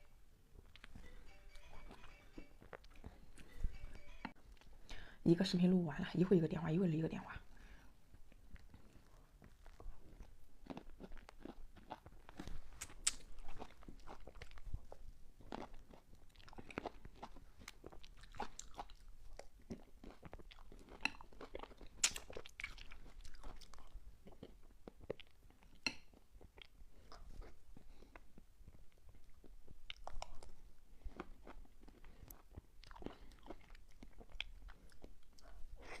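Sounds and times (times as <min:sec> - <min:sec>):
wet chewing and mouth smacks: 0:00.6 - 0:01.0, 0:08.1 - 0:36.0.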